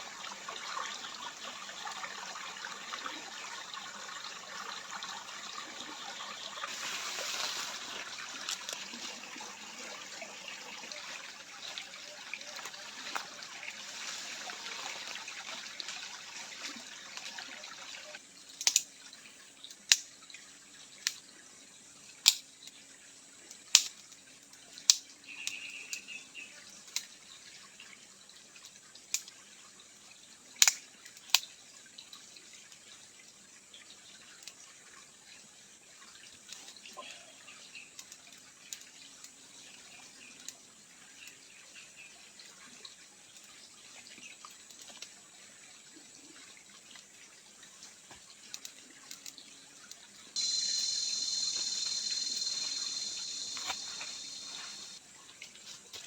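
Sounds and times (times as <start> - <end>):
water trickling: 0.0 - 25.4, 26.6 - 56.0
sharp single ticks: 50.4 - 55.0.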